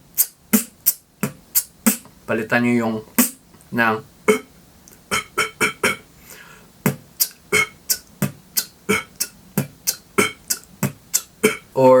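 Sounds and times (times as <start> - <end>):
beatboxing: 0.0 - 2.1, 3.1 - 3.4, 4.3 - 6.1, 6.8 - 12.0.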